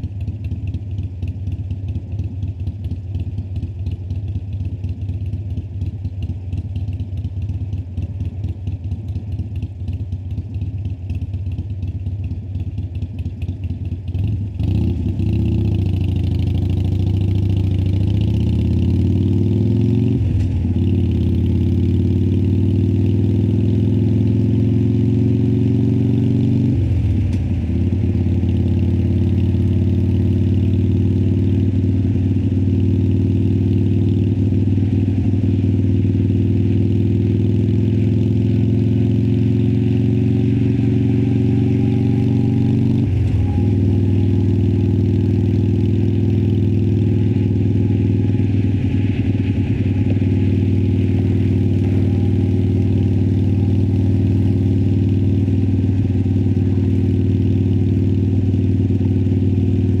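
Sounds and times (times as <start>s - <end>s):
motorcycle engine running: 0.0s - 60.0s.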